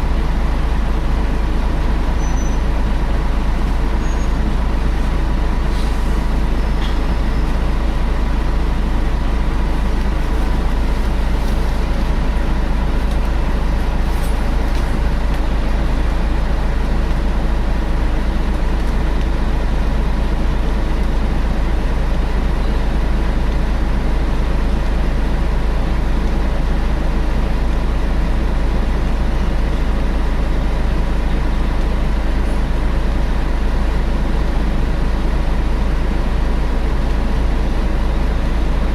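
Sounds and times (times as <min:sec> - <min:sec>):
cooling fan whine: 0:00.0 - 0:38.9
diesel bus engine rumble: 0:00.0 - 0:38.9.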